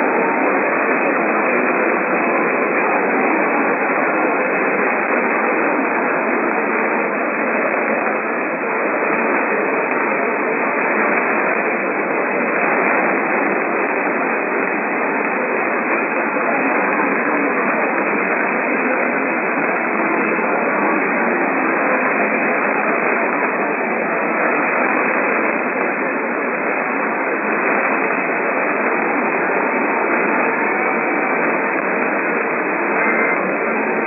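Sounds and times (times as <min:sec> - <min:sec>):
radio static hiss: 0:00.0 - 0:34.0.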